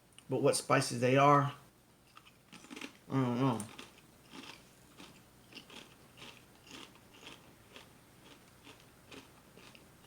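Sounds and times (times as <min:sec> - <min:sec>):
potato chip being chewed: 0:02.1 - 0:09.9.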